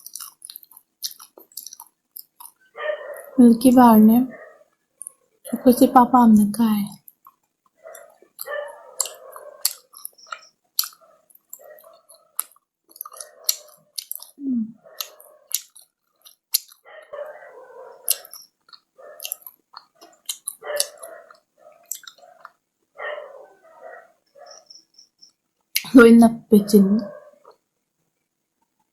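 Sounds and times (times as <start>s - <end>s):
lip-smacking clicks: 0.0s - 2.6s, 7.1s - 16.8s, 18.0s - 22.6s
wet mouth noises: 0.0s - 2.6s, 7.0s - 16.8s, 18.0s - 22.6s
chewing chocolate: 0.0s - 3.4s, 7.0s - 22.6s.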